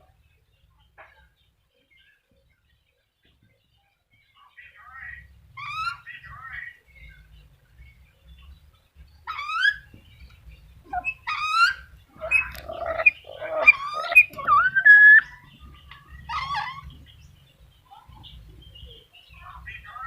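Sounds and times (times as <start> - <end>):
parrot calling: 9.2 - 9.9, 10.9 - 15.4, 16.2 - 17.0.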